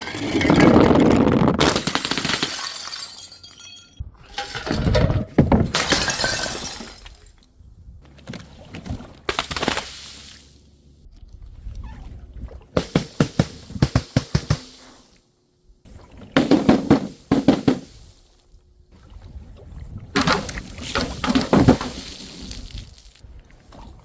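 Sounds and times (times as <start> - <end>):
glass bottles smashing: 1.6 - 7.3
glass shards tinkling: 2.5 - 4.9.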